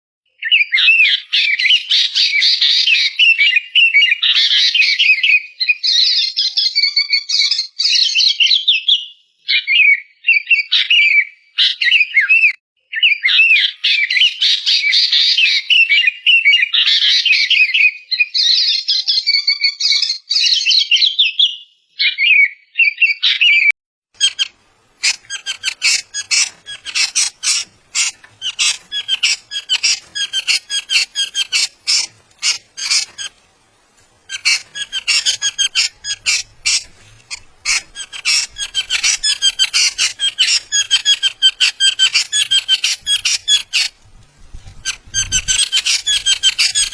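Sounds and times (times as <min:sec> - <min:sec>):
bird chattering and warbling: 0:24.2 - 0:46.9
harsh rasping bird calls: 0:24.2 - 0:46.9.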